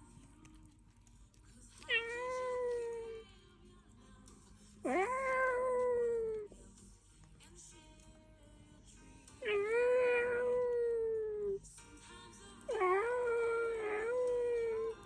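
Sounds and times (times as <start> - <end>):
faint background music: 0.0 - 15.0
cat meowing: 1.8 - 3.3, 4.9 - 6.5, 9.4 - 11.6, 12.7 - 15.0.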